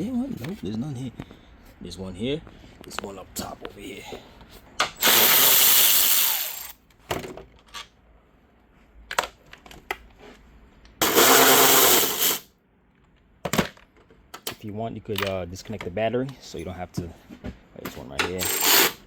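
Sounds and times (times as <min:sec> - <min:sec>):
cordless power tool spinning bolts: 0:05.0 - 0:06.8, 0:11.0 - 0:12.4, 0:18.4 - 0:19.0.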